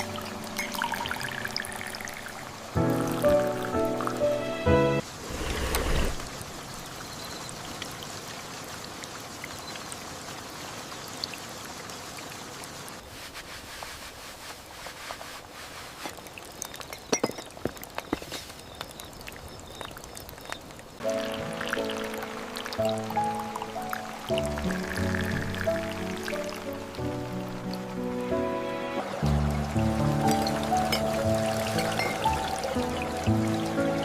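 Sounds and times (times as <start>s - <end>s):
soft music: 0.0s - 5.0s, 21.0s - 34.0s
steady rain: 0.0s - 34.0s
drips and taps: 16.0s - 27.1s, 30.0s - 33.5s.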